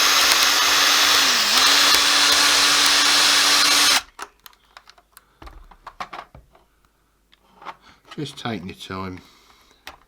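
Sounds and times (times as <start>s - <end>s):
small electric drill running: 0.0s - 4.1s.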